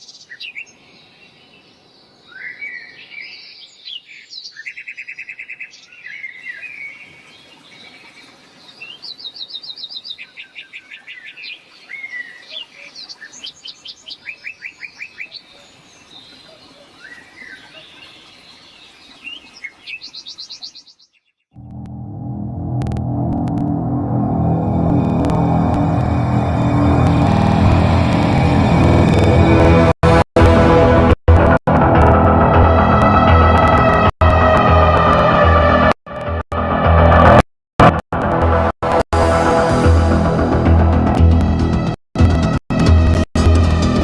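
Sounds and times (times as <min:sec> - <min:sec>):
birds chirping and trilling: 0:00.0 - 0:21.4.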